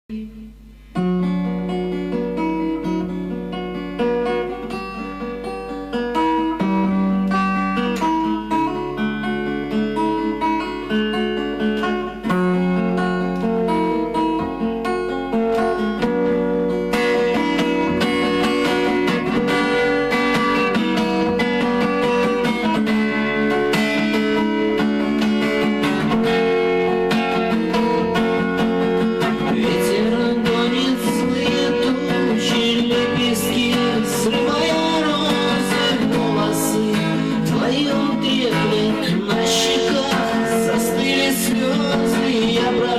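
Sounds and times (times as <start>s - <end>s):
acoustic guitar playing: 0.0s - 42.9s.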